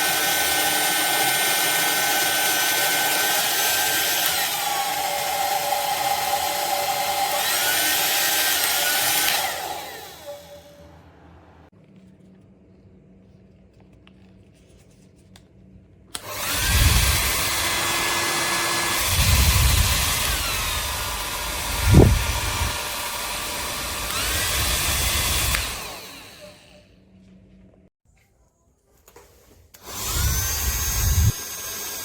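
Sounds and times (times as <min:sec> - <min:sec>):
hair dryer blowing: 0:00.0 - 0:10.8, 0:16.1 - 0:26.8, 0:29.8 - 0:32.0
air gusts hitting microphone: 0:21.6 - 0:22.8.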